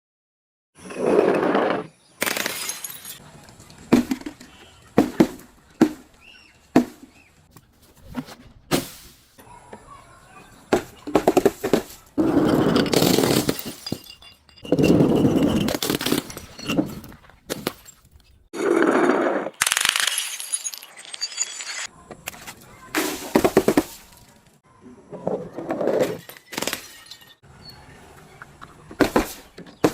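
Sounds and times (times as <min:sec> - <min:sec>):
objects smashing and glass shattering: 0:02.2 - 0:03.2, 0:12.2 - 0:18.0, 0:19.6 - 0:21.9, 0:26.2 - 0:27.4.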